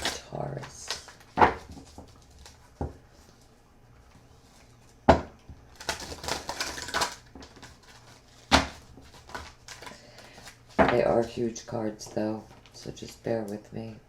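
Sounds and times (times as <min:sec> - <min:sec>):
cards slapping: 0:05.7 - 0:10.9
cards being shuffled: 0:05.7 - 0:11.4.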